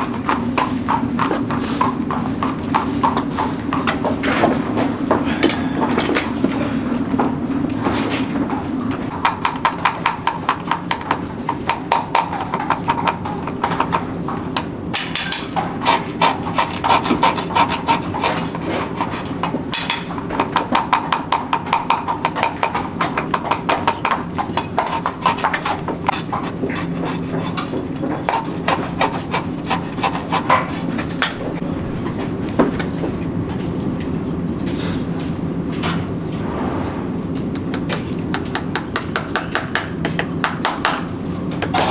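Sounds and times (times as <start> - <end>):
hammer tapping metal: 37.4 - 41.1.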